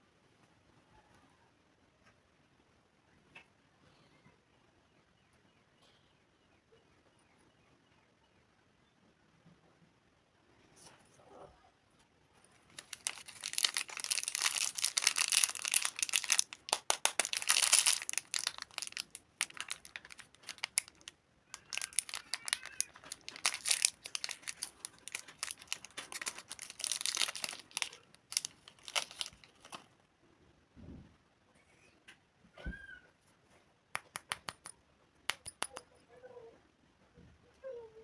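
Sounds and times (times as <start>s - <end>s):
plastic wrapper crinkling: 12.6s - 29.9s.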